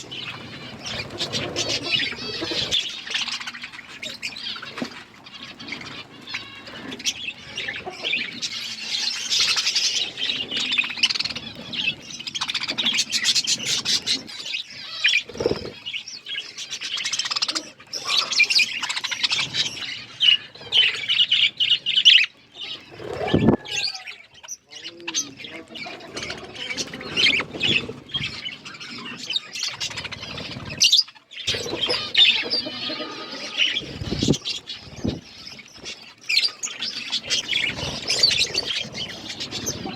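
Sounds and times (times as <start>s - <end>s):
wing flutters: 0.0s - 16.0s, 22.7s - 23.9s, 25.7s - 39.9s
budgerigars chattering and chirping: 0.0s - 39.9s.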